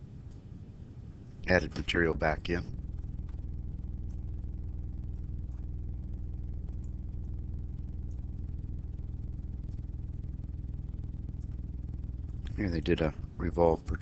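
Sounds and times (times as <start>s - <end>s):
low hum: 0.0s - 14.0s
faint ticks: 2.8s - 12.6s.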